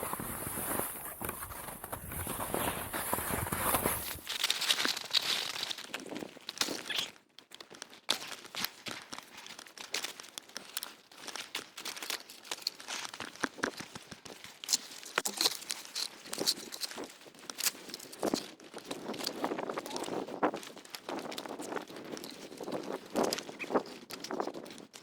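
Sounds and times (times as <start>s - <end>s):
skis crunching on wet snow: 0.0s - 5.6s.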